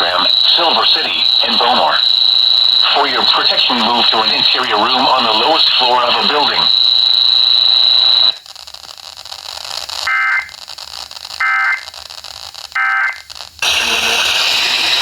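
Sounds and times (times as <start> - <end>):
short data bursts of steady tones: 0.0 - 8.4, 11.4 - 12.0
loud static: 0.0 - 15.0
radio hiss: 0.0 - 15.0.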